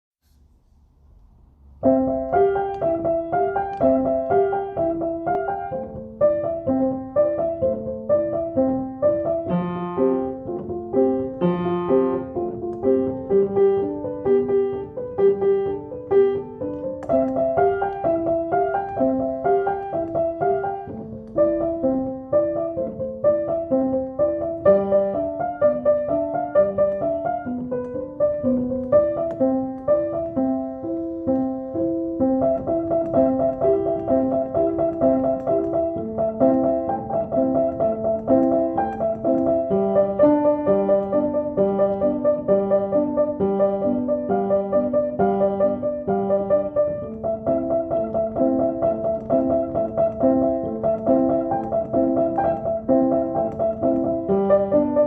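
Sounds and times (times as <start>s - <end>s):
piano-like keyboard music: 1.6s - 55.0s.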